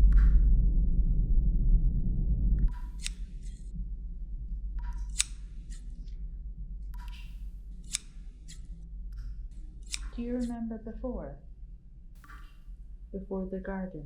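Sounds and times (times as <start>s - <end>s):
sharp mechanical snipping clicks: 2.7s - 3.6s, 4.8s - 5.9s, 7.0s - 8.8s, 9.5s - 10.6s.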